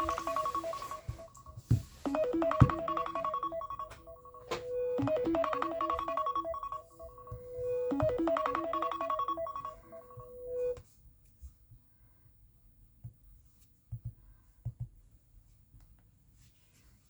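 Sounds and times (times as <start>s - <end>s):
phone ringtone: 0.0s - 10.8s.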